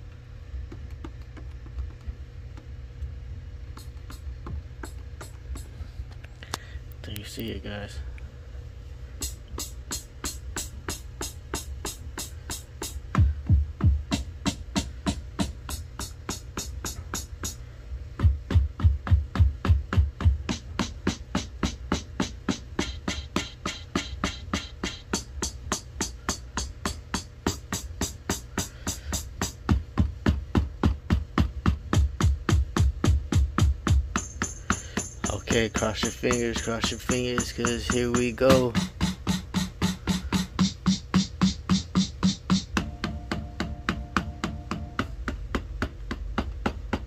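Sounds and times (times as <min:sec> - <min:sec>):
electronic beat music: 0:09.2 - 0:17.6, 0:18.2 - 0:25.8, 0:26.6 - 0:45.4
drum sample hits: 0:18.2 - 0:45.6.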